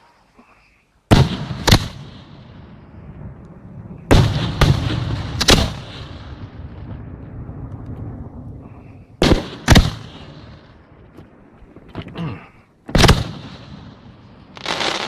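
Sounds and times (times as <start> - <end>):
low rumbling echo: 1.3 - 14.6
firework shells bursting with bangs: 3.9 - 7.1, 8.8 - 12.1, 12.9 - 15.0.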